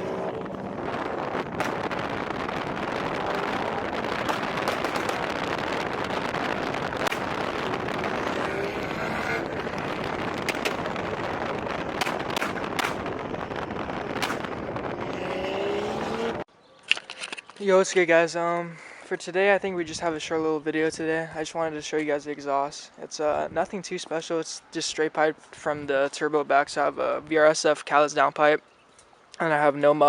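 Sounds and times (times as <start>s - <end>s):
car engine running hard: 0.0s - 16.5s
exhaust pops and cracks: 0.7s - 15.3s.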